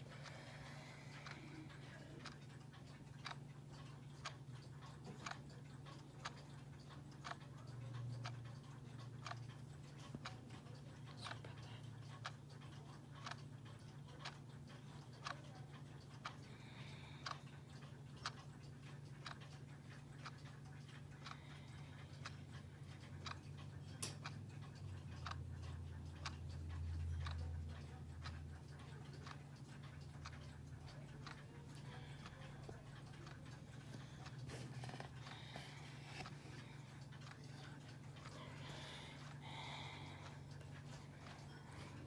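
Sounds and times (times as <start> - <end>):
clock ticking: 0.0 - 42.0.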